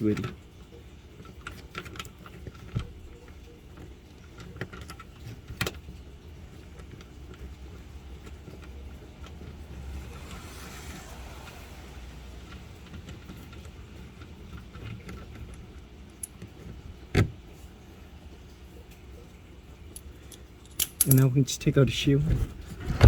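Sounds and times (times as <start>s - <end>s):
low steady rumble: 5.0s - 23.0s
fasteners clinking and rattling: 13.0s - 16.8s, 19.9s - 21.6s.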